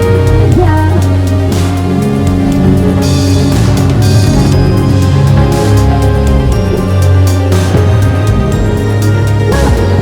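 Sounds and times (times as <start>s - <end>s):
loud music with heavy bass: 0.0s - 10.0s.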